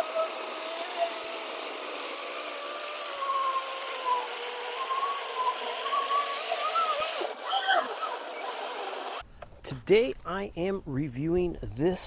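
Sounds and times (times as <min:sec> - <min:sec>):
chain hissing: 0:00.0 - 0:09.2
electric chainsaw cutting wood: 0:00.0 - 0:09.2.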